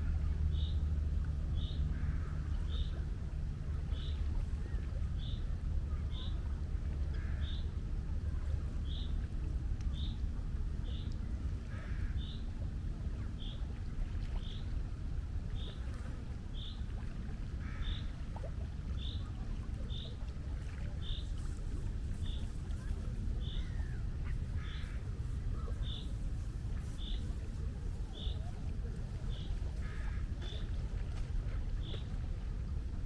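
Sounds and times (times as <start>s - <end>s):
low rumble of sea and wind: 0.0s - 33.0s
lower bird calls: 17.6s - 18.2s, 22.2s - 26.1s.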